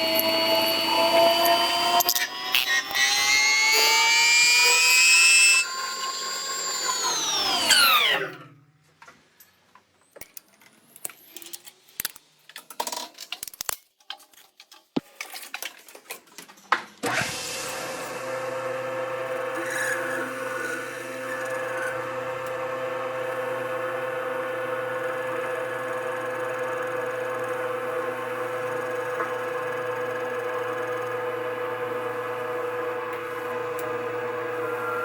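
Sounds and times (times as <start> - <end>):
power tool motor whining: 0.0 - 8.6, 17.0 - 35.0
clicks and knocks of handling: 8.9 - 17.0.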